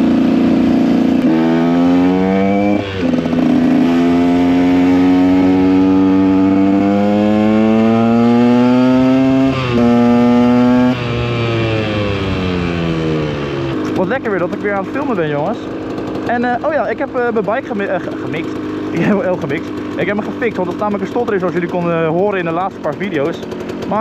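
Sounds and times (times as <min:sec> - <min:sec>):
two-stroke motorcycle accelerating: 0:00.0 - 0:24.0.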